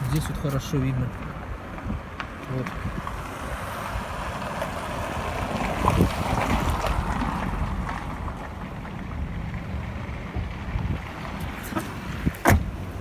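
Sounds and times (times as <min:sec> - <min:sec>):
wind buffeting microphone: 0:00.0 - 0:13.0.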